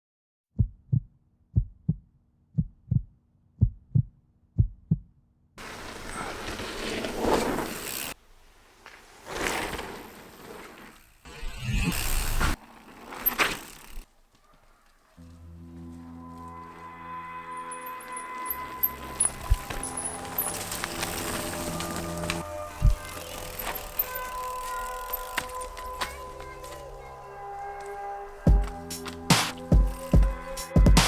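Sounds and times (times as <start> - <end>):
heartbeat thumps: 0.6 - 5.1, 28.5 - 28.8
wind and tyre rush: 5.6 - 30.6.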